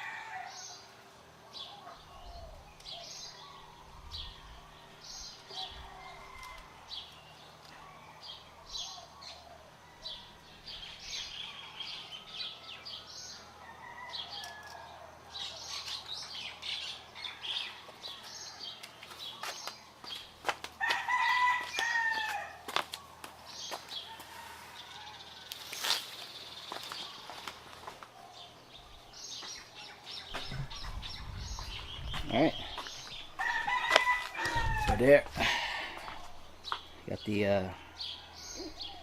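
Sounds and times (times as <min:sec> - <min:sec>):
rooster crowing: 0:00.0 - 0:00.8, 0:04.1 - 0:07.1, 0:11.3 - 0:15.5, 0:20.8 - 0:22.7, 0:24.0 - 0:25.5, 0:30.4 - 0:36.5
small birds chirping: 0:00.4 - 0:39.0.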